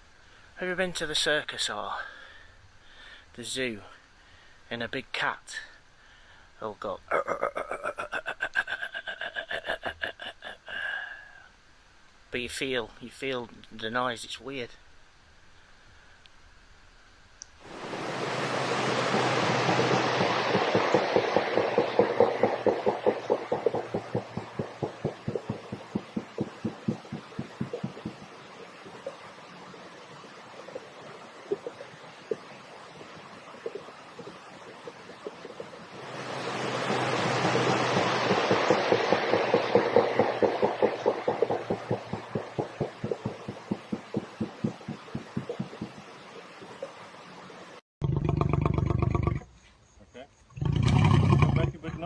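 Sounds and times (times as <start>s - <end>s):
steady hiss: 0.0s - 47.8s
fast even throbbing: 17.7s - 28.3s, 35.5s - 46.1s
rapid low pulses: 17.7s - 28.3s, 35.9s - 46.1s.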